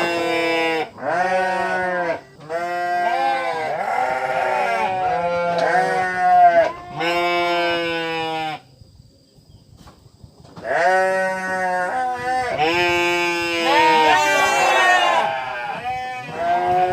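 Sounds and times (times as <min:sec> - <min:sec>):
sheep bleating: 0:00.0 - 0:08.6, 0:10.7 - 0:16.9.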